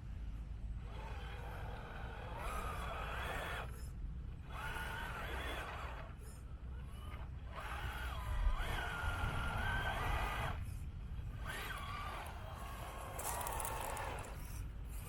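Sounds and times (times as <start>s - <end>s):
toy car electric motor whine: 4.5s - 10.7s, 11.4s - 15.0s.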